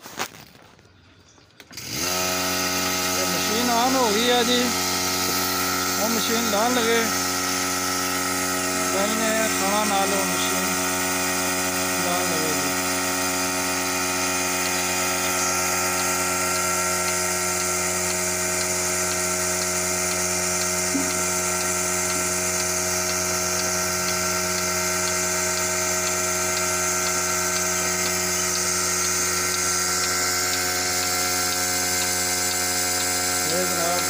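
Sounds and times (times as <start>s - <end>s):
milking machine droning hum: 1.7s - 34.0s
faint regular ticking: 12.0s - 34.0s.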